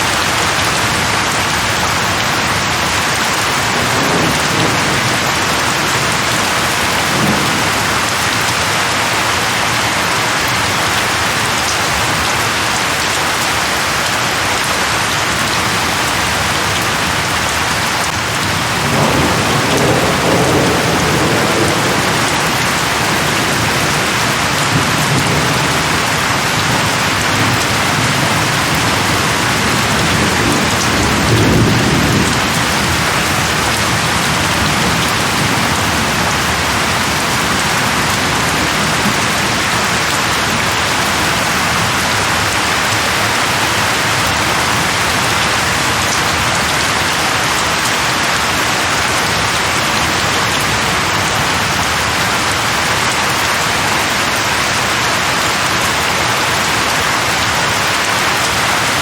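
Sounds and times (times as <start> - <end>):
heavy rain on leaves: 0.0 - 59.0
low thunder rumbling: 1.9 - 9.4, 18.0 - 42.9.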